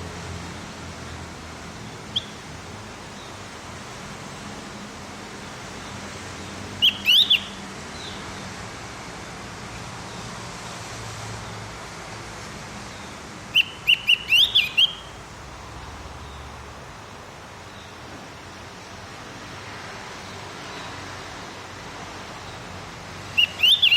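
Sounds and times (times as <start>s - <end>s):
bird singing whistled notes: 2.1s - 2.4s, 6.8s - 8.2s, 13.5s - 15.1s, 23.4s - 23.9s.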